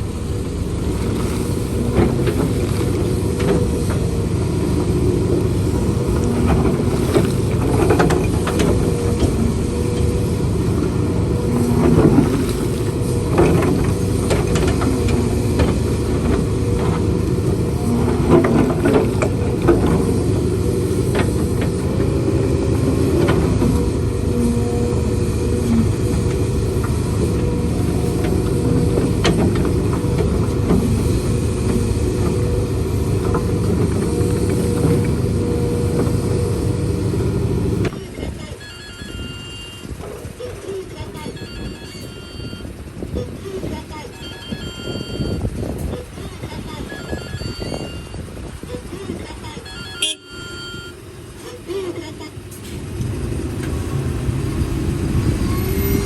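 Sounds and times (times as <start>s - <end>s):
heavy machinery diesel engine: 0.0s - 56.0s
knocks and clanks: 0.9s - 37.9s.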